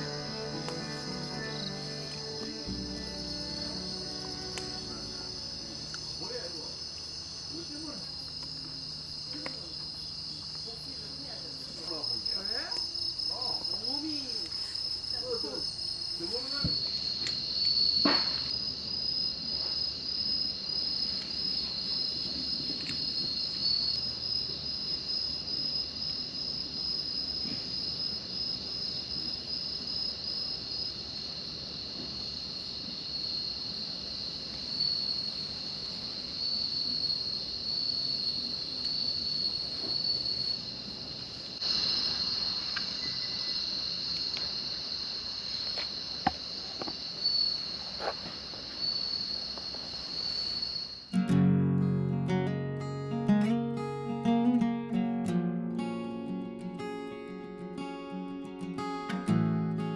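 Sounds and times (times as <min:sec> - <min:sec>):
faint voices: 0:00.0 - 0:16.8
insects trilling: 0:00.0 - 0:59.9.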